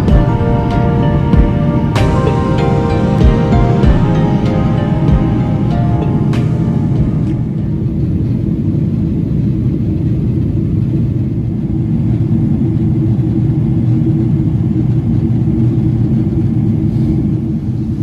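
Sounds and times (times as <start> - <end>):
airflow noise: 0.0 - 10.8
airplane cabin engine rumble: 0.0 - 18.0.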